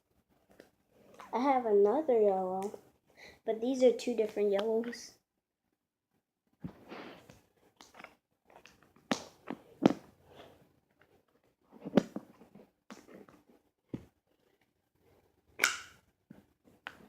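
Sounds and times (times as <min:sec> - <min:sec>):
rustling and scraping: 0:06.6 - 0:15.3.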